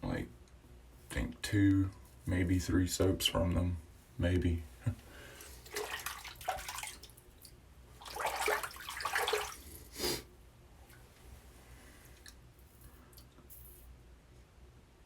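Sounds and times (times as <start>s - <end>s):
water splashing at a sink: 5.4s - 9.7s.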